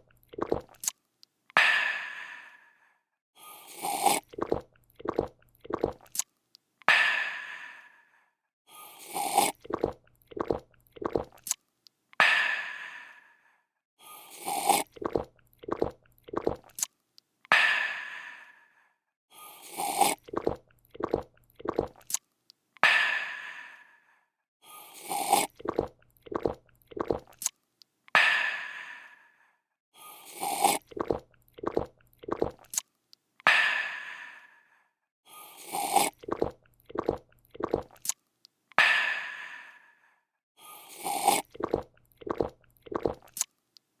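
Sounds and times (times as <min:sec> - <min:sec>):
person gulping: 0:00.0 - 0:00.9, 0:03.8 - 0:06.2, 0:09.1 - 0:11.6, 0:14.4 - 0:16.9, 0:19.8 - 0:22.2, 0:25.1 - 0:27.5, 0:30.4 - 0:32.8, 0:35.8 - 0:38.1, 0:41.0 - 0:43.4
person slurping a drink: 0:00.0 - 0:00.9, 0:03.5 - 0:06.3, 0:08.8 - 0:11.6, 0:14.2 - 0:16.9, 0:19.5 - 0:22.2, 0:24.8 - 0:27.5, 0:30.2 - 0:32.8, 0:35.4 - 0:38.2, 0:40.7 - 0:43.5.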